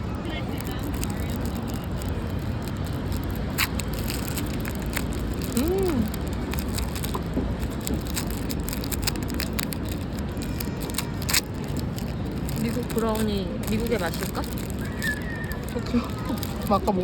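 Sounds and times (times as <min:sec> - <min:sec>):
steady background noise: 0:00.0 - 0:17.0.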